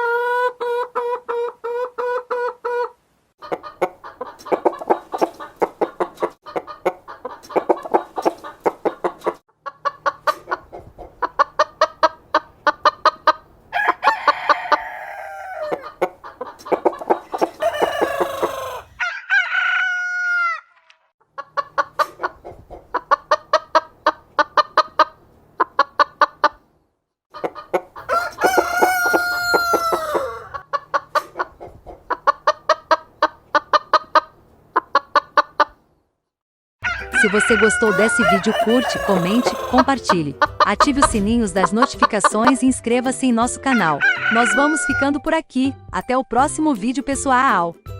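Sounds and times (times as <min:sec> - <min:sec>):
chickens clucking: 0:00.0 - 0:19.1, 0:21.2 - 0:26.7, 0:27.4 - 0:35.9, 0:36.8 - 0:42.7
rooster crowing: 0:13.7 - 0:15.9, 0:17.6 - 0:20.7, 0:28.0 - 0:30.6, 0:36.8 - 0:40.0, 0:44.0 - 0:45.0.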